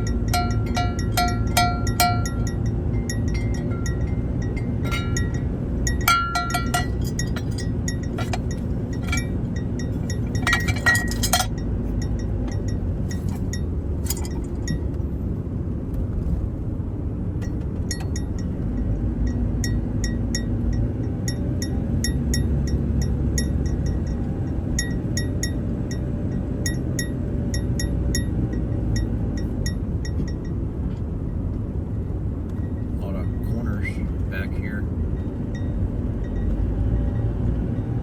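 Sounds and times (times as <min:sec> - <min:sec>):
small bell jingling: 0:00.0 - 0:14.8
vehicle rumbling on road: 0:00.0 - 0:38.0.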